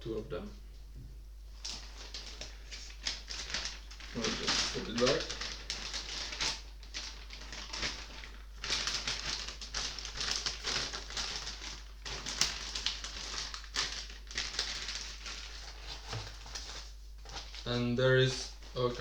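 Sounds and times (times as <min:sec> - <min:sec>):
steady low hum: 0:00.0 - 0:05.9, 0:15.7 - 0:19.0
hands rustling with card: 0:01.6 - 0:19.0.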